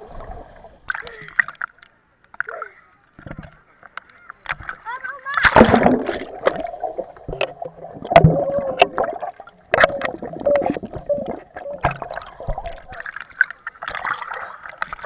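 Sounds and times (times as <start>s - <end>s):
sea water splashing: 4.3s - 15.0s.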